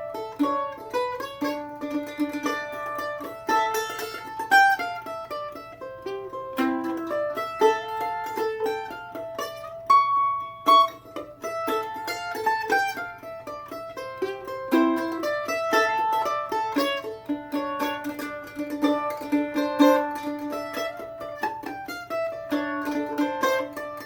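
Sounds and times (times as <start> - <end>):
plucked string tune: 0.0 - 24.0.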